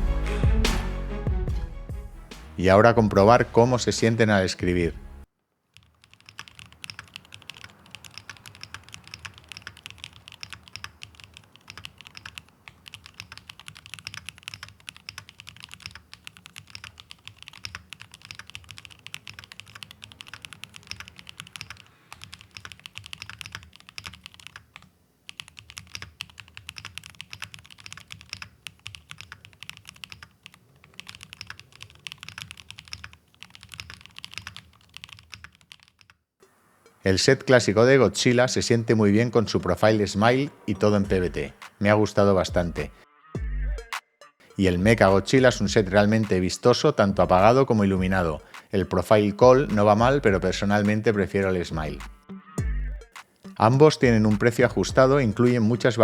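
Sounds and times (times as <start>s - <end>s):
fast typing on mechanical keyboard: 5.8s - 36.2s.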